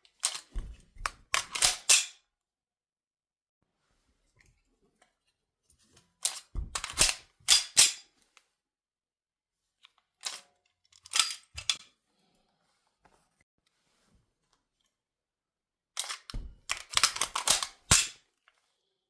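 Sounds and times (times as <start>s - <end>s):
gun reloading clacks: 6.3s - 7.8s, 16.0s - 18.1s.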